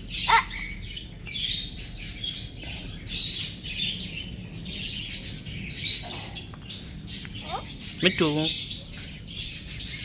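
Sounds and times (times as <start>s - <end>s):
cage birds chirping and warbling: 0.0s - 10.0s.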